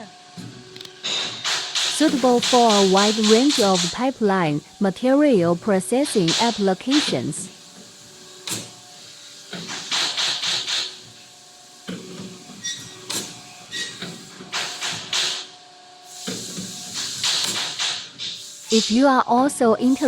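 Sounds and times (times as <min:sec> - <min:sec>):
machine humming: 0:00.0 - 0:17.8
bursts of hissing: 0:01.5 - 0:11.8, 0:16.1 - 0:20.0.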